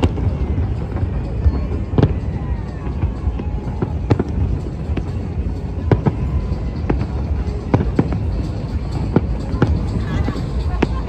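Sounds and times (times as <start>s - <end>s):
fireworks bursting: 0.0s - 11.0s
low rumble: 0.0s - 11.0s.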